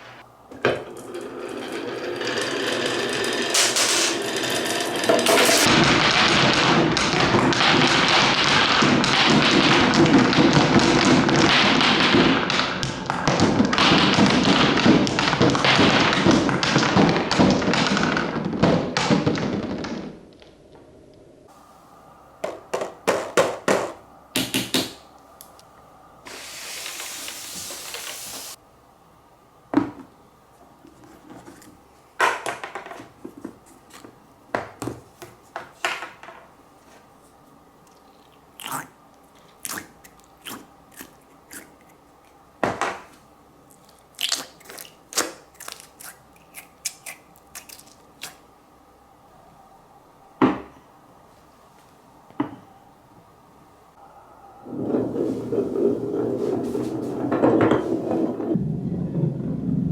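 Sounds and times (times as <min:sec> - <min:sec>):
balls rattling down marble run: 0:00.8 - 0:12.6
ball hissing roll: 0:26.2 - 0:28.6.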